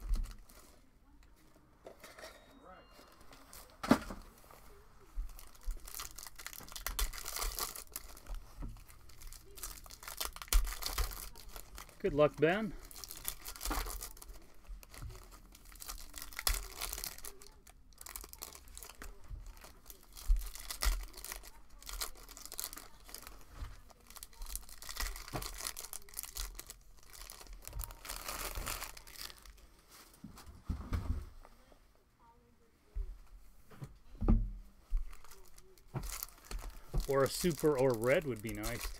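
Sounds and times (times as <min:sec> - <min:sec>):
card pack wrappers tearing: 0:05.3 - 0:29.5, 0:35.1 - 0:38.9.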